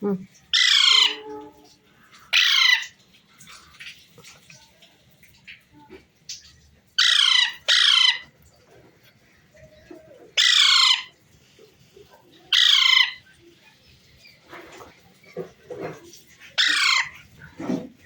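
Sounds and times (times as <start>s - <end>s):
parrot squawking: 0.5s - 2.9s, 7.0s - 8.3s, 10.4s - 11.2s, 12.5s - 13.3s, 16.4s - 17.6s.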